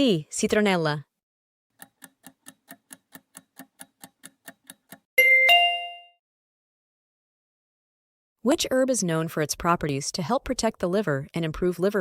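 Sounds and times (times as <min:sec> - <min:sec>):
two-note ding-dong chime: 0:05.2 - 0:06.2.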